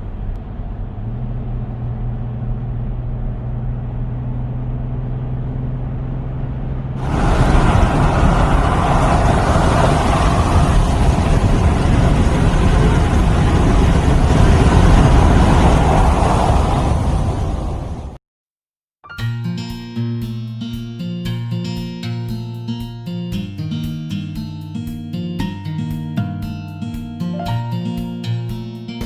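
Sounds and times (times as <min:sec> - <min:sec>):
low engine hum: 0:00.0 - 0:18.2
rushing road and engine noise: 0:00.0 - 0:18.2.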